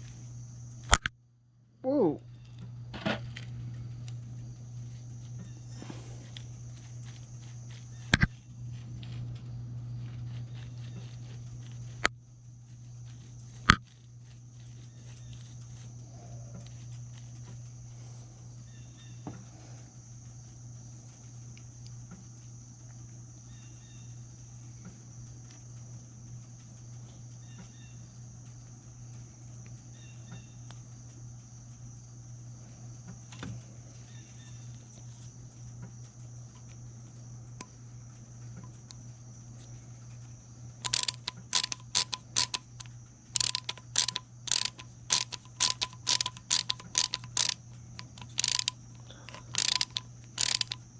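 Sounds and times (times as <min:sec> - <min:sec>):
steady low hum: 0:00.0 - 0:50.9
small metal parts clicking: 0:40.8 - 0:50.9.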